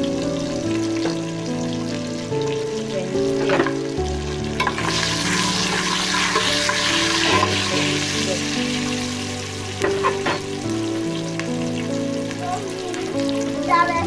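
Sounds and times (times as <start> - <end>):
background music: 0.0 - 14.0
oil sizzling in a pot: 0.0 - 14.0
utensil knocks: 3.4 - 3.9, 9.8 - 10.5.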